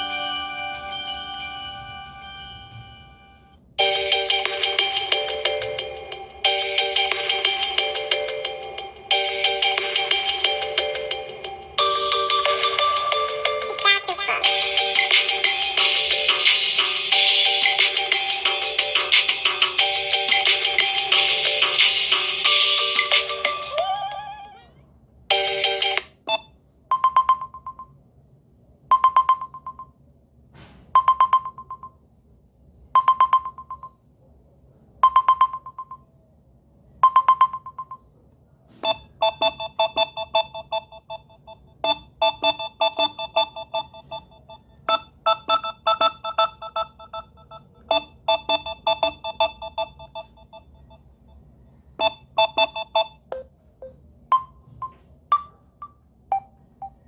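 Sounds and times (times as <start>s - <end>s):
bouncing chord ringtone melody: 0.0s - 24.0s, 25.3s - 26.0s, 52.4s - 54.0s, 54.9s - 57.0s.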